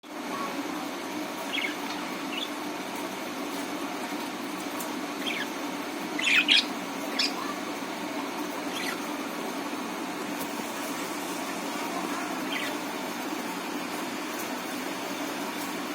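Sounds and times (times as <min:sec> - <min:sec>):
low background hum: 0:00.0 - 0:15.9
budgerigars chirping: 0:01.5 - 0:02.6, 0:05.2 - 0:07.6, 0:08.7 - 0:09.2, 0:12.4 - 0:12.8.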